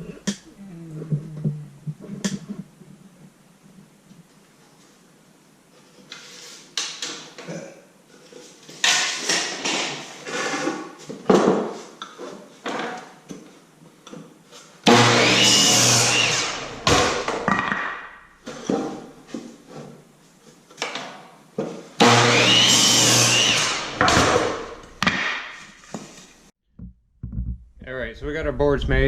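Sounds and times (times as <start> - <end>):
power saw cutting board: 14.9 - 17.5, 22.0 - 25.1.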